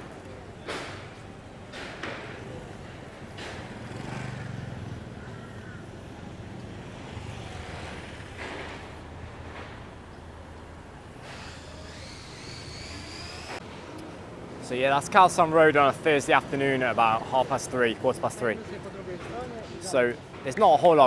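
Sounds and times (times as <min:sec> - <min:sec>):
vehicle engine running: 0:02.6 - 0:12.4.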